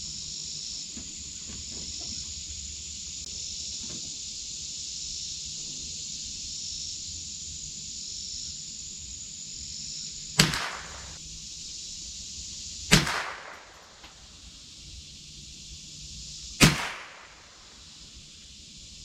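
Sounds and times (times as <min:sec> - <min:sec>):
rifle shots with echo: 0:10.4 - 0:11.2, 0:12.9 - 0:14.0, 0:16.6 - 0:17.5.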